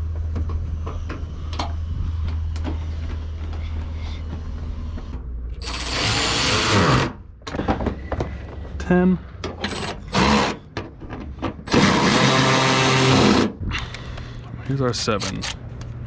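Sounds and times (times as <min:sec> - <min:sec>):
rapid ratcheting: 0:05.6 - 0:07.0.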